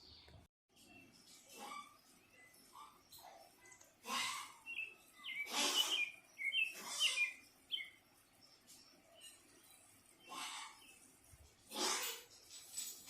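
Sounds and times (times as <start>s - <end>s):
songbird high chirps: 4.6s - 11.4s
harsh rasping bird bursts: 5.3s - 7.4s.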